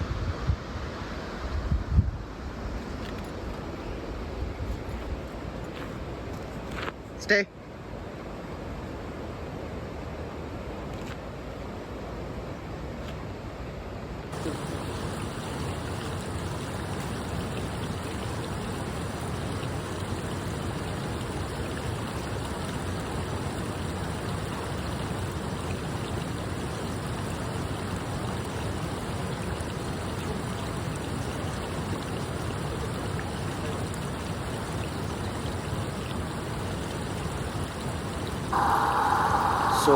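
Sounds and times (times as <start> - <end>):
steady rushing noise: 38.5 - 39.9.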